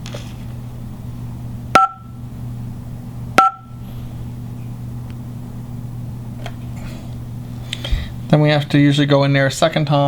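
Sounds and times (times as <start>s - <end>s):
short key-press beep: 1.8s - 2.1s, 3.4s - 3.7s.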